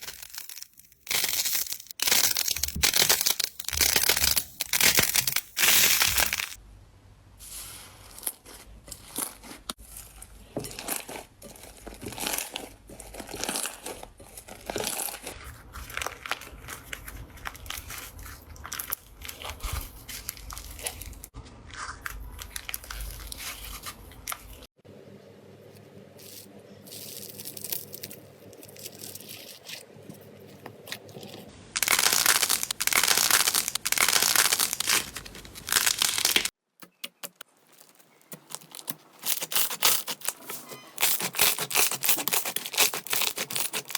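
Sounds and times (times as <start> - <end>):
slime squeezed by hand crackling: 31.8 - 36.5.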